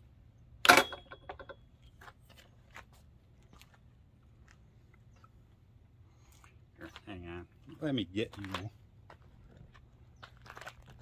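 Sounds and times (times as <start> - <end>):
metal clack with ring: 0.6 - 1.6.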